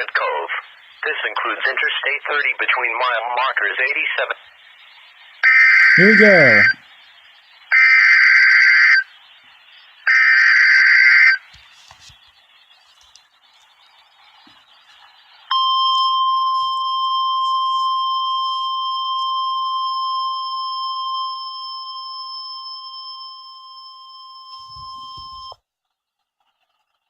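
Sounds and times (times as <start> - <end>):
faint receiver static: 0.0 - 6.8
steady alarm tone: 5.4 - 6.8, 15.5 - 25.5.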